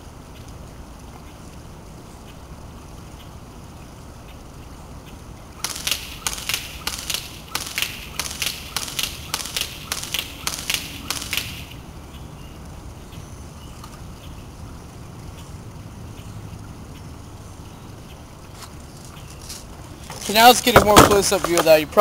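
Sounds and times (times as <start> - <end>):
airsoft gun shots: 5.6 - 11.8.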